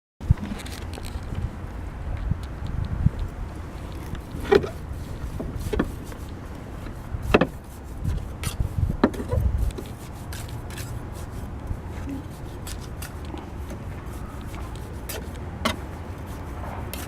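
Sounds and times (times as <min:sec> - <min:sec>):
steady low rumble: 0:00.2 - 0:17.0
roofing work knocks and clacks: 0:03.7 - 0:10.9.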